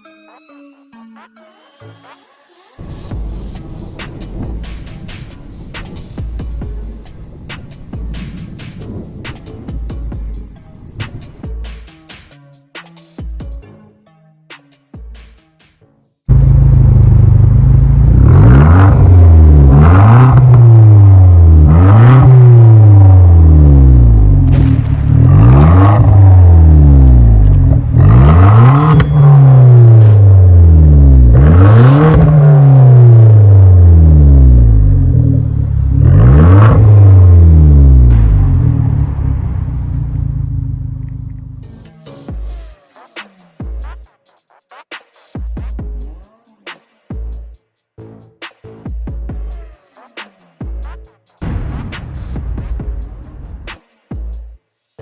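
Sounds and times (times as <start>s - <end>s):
electronic hip-hop music: 0.0s - 16.9s, 17.8s - 54.6s
car engine revving: 16.3s - 41.8s
sliding bass notes: 16.3s - 41.8s
hi-hat ticks: 42.3s - 54.5s.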